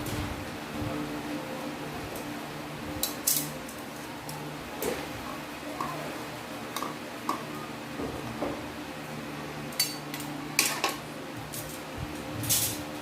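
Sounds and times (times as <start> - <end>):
metal cookware clattering: 9.7 - 11.0.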